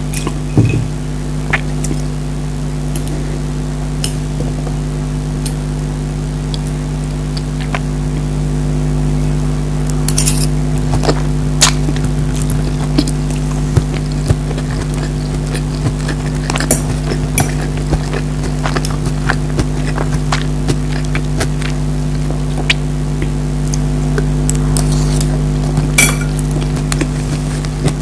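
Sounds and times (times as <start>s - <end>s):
steady low hum: 0.0s - 28.0s
bites of food: 11.0s - 25.8s
cutlery clinking on a plate: 26.0s - 26.3s.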